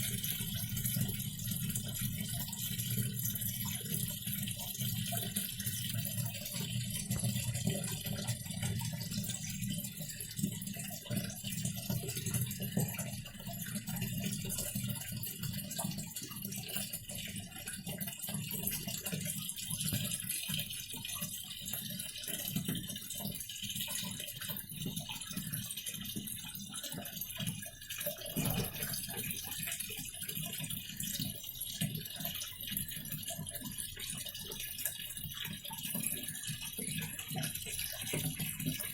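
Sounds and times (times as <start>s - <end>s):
washing machine churning and rattling: 0.0s - 38.9s.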